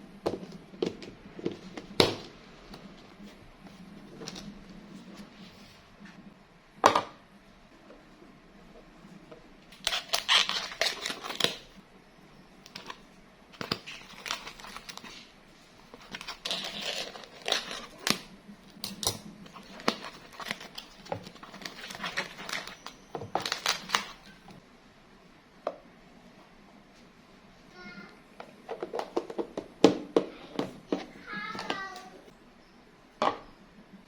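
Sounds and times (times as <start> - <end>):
plastic crinkling: 9.7 - 11.8, 12.6 - 24.6.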